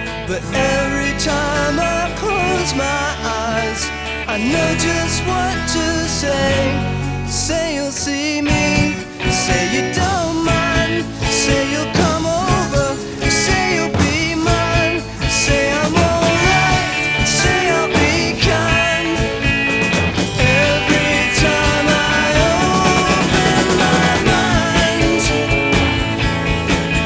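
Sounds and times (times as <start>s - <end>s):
rock song with steady beat: 0.0s - 27.0s.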